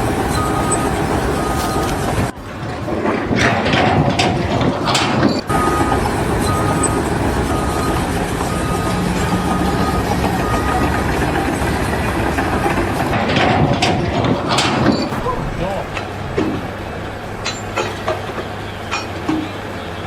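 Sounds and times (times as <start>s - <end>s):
heavy machinery running: 0.0s - 20.0s.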